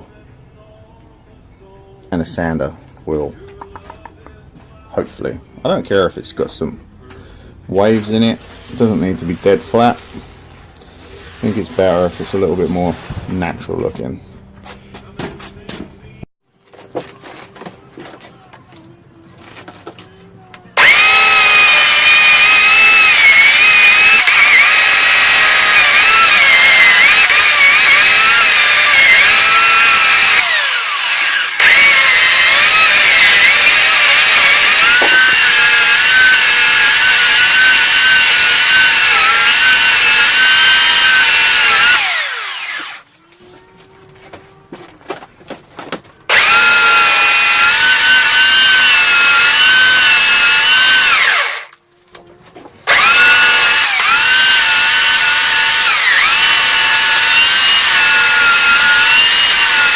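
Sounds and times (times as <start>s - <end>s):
chainsaw cutting log: 20.8s - 43.0s, 46.3s - 51.8s, 52.8s - 59.9s.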